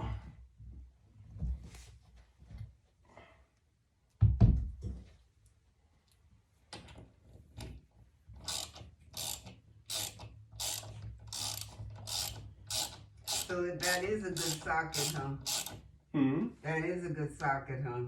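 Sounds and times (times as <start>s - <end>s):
hand tool rasping strokes: 8.5s - 15.8s.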